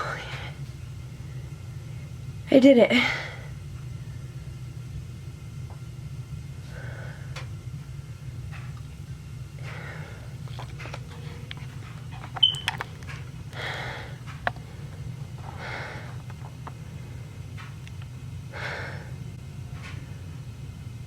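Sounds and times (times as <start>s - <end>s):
person breathing heavily: 6.6s - 7.4s, 9.6s - 10.4s, 13.5s - 16.2s, 18.5s - 19.2s.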